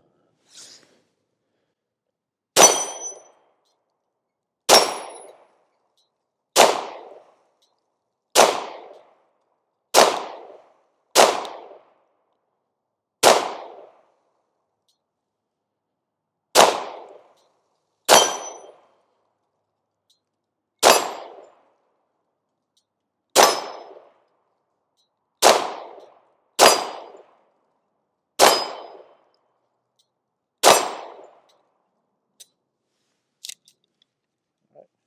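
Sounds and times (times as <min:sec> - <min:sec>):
pistol shots echoing: 0:02.6 - 0:03.2, 0:04.7 - 0:05.4, 0:06.6 - 0:07.2, 0:08.4 - 0:09.0, 0:09.9 - 0:11.8, 0:13.2 - 0:14.0, 0:16.6 - 0:17.3, 0:18.1 - 0:18.8, 0:20.8 - 0:21.5, 0:23.4 - 0:24.1, 0:25.4 - 0:26.0, 0:26.6 - 0:27.4, 0:28.4 - 0:29.2, 0:30.6 - 0:31.4.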